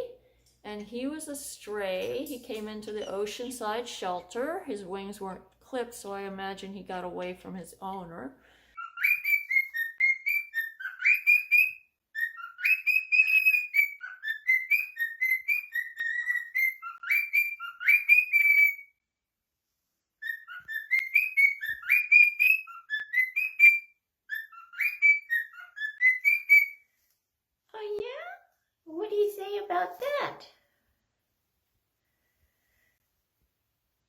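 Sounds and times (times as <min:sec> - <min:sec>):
cockatiel whistling: 0:08.8 - 0:19.0, 0:20.2 - 0:26.9.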